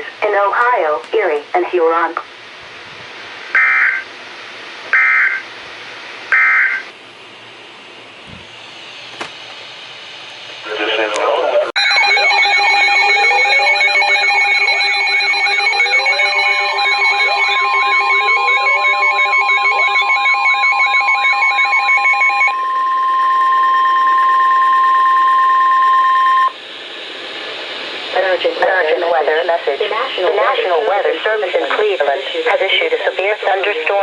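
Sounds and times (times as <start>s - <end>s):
steady alert tones: 11.8s - 26.5s
warbling alert tones: 11.8s - 26.5s.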